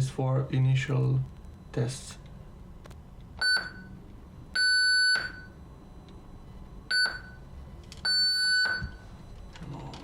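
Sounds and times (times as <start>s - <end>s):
electronic beeps: 3.4s - 7.4s, 8.0s - 9.9s.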